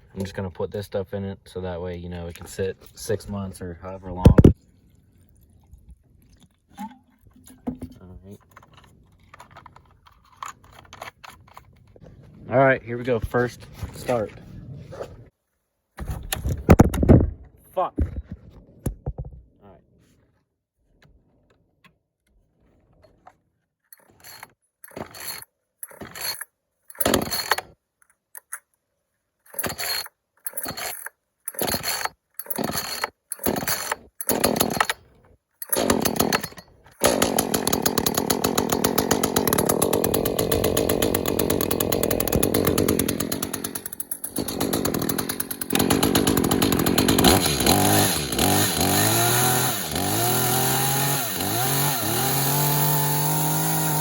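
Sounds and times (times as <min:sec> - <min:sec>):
chainsaw recoil starter pulls: 0:24.0 - 0:28.6, 0:29.4 - 0:54.0
chainsaw engine running: 0:24.2 - 0:26.4, 0:27.0 - 0:27.6, 0:31.6 - 0:35.0, 0:35.7 - 0:54.0.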